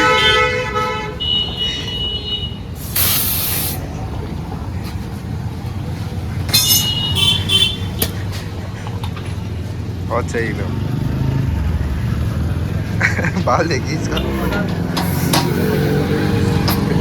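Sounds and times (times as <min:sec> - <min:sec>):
traffic rumble: 0:00.0 - 0:17.0
compressed air blast: 0:02.8 - 0:03.9, 0:14.9 - 0:16.9.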